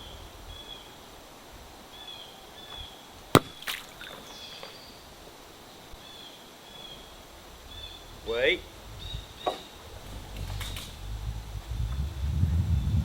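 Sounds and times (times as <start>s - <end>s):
faint outdoor background: 0.0s - 13.0s
sharp knock: 3.4s - 4.2s.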